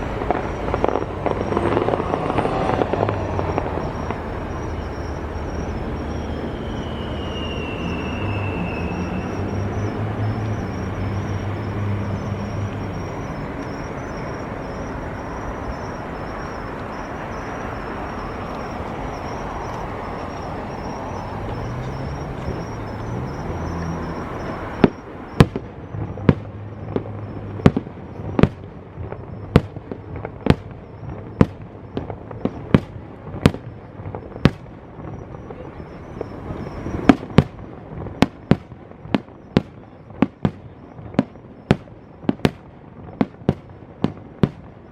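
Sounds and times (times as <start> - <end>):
firework shells bursting: 0.0 - 5.0
fireworks rumble: 0.0 - 44.9.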